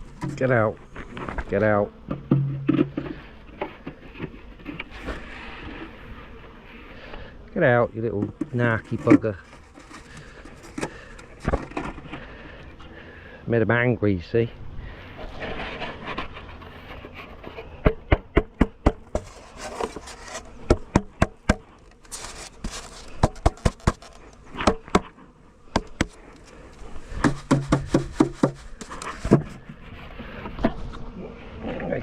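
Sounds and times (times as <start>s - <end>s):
taps and knocks on wooden beehive: 1.2s - 4.9s, 8.1s - 12.2s, 17.7s - 29.9s.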